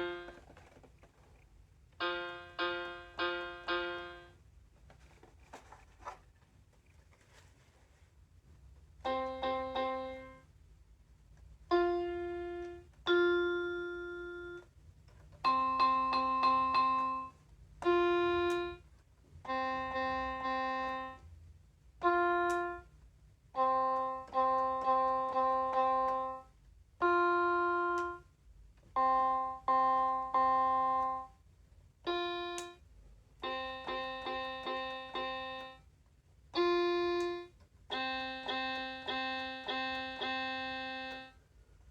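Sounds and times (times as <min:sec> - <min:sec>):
toy electronic keyboard melody: 0:00.0 - 0:00.4, 0:02.0 - 0:04.4, 0:09.0 - 0:10.4, 0:11.7 - 0:14.7, 0:15.4 - 0:18.8, 0:19.4 - 0:21.2, 0:22.0 - 0:22.9, 0:23.5 - 0:28.2, 0:28.9 - 0:31.4, 0:32.0 - 0:32.8, 0:33.4 - 0:35.8, 0:36.5 - 0:41.4.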